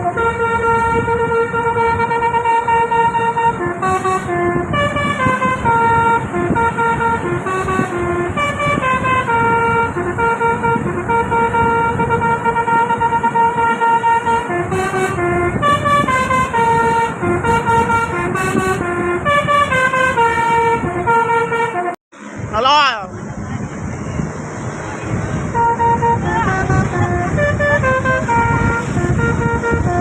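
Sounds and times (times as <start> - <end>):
bus musical horn melody: 0.0 - 22.3, 25.4 - 30.0.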